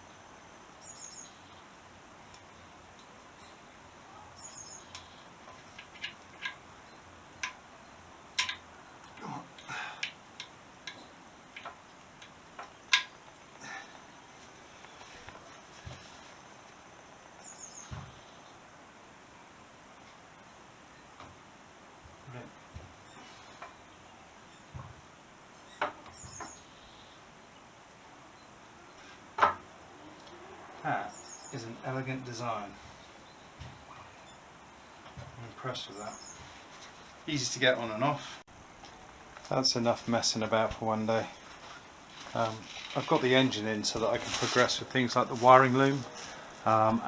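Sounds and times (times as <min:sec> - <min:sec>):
hand tools clicking and tapping: 0:04.8 - 0:06.7, 0:07.4 - 0:07.7, 0:08.4 - 0:13.7.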